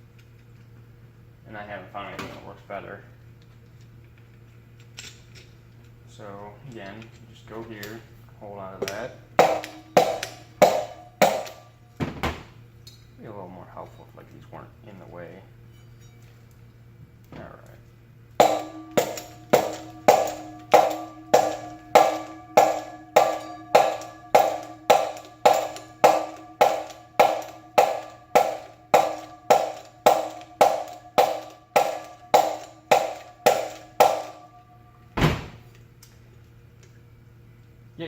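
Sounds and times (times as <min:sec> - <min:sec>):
mallet striking metal parts: 0:08.8 - 0:11.8, 0:18.4 - 0:35.1
dull low knock: 0:18.4 - 0:34.6.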